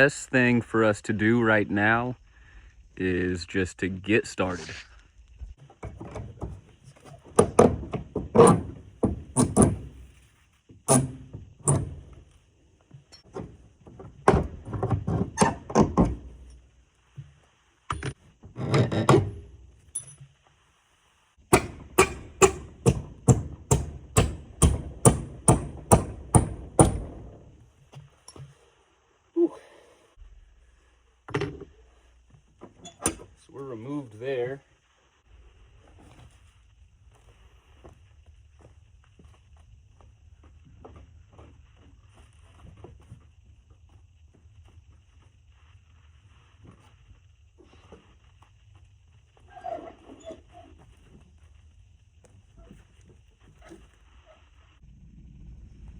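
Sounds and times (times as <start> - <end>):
hammer blows on nails: 21.5 - 27.4.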